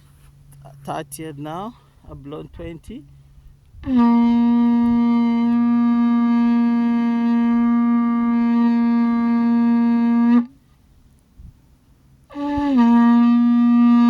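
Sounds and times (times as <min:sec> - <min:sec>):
shofar blown: 0:03.1 - 0:10.7, 0:12.2 - 0:14.0.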